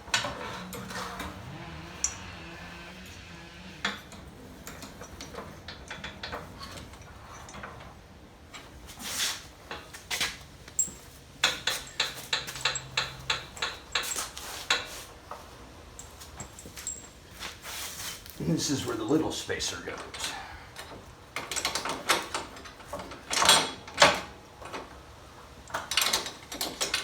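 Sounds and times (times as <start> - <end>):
metal hardware clinking: 0.1 - 8.7, 9.7 - 14.9.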